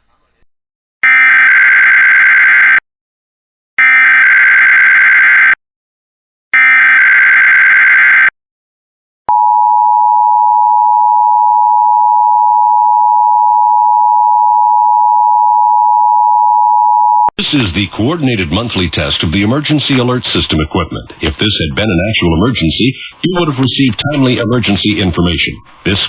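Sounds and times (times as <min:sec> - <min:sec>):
steady alert attention tone: 0:23.2 - 0:25.7.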